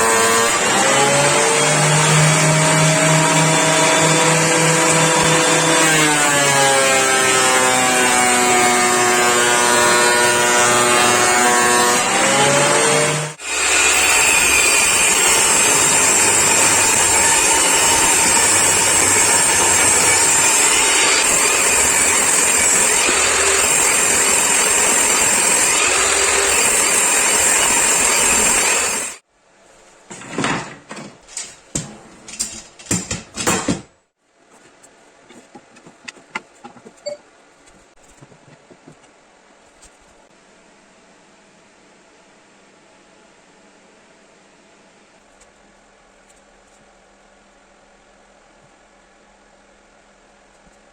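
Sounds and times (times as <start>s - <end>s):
woodworking power tool running: 0.0s - 29.2s
sharp knocks and clatters: 30.1s - 34.0s, 34.6s - 37.0s.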